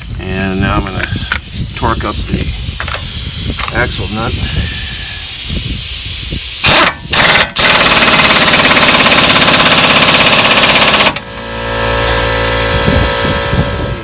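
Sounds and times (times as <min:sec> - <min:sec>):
steady hum: 0:10.8 - 0:14.0.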